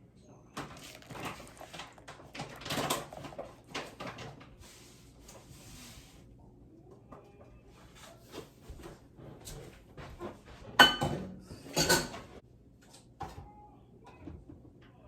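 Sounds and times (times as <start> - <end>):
tableware clatter: 10.8 - 12.3
tableware clicking and knocking: 10.8 - 12.3.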